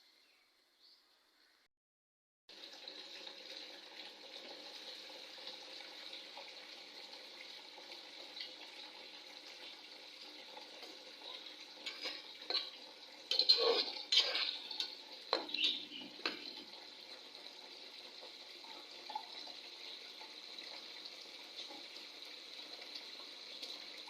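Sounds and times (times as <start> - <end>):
food sizzling in a pot: 2.5 - 24.0
spoon stirring in a pot: 10.8 - 16.7.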